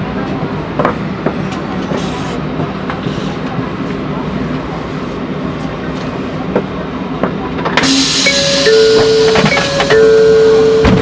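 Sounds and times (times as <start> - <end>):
train car rumble: 0.0 - 11.0
loud hiss: 7.8 - 8.6
electronic chime tones: 7.9 - 11.0.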